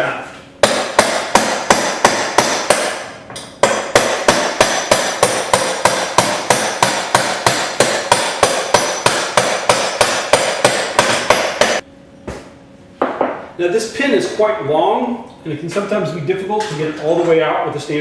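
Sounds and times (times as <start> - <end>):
hammer striking steel pin: 0.6 - 11.8.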